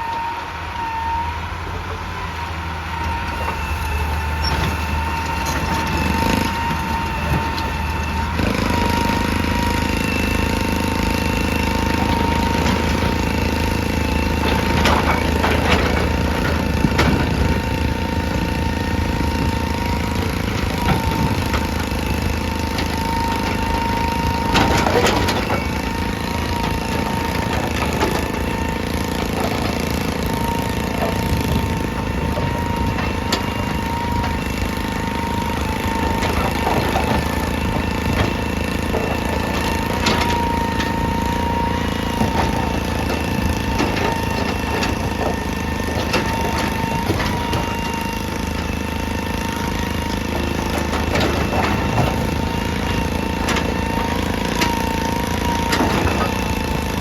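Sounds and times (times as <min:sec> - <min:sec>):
excavator diesel engine whining: 0:00.0 - 0:57.0.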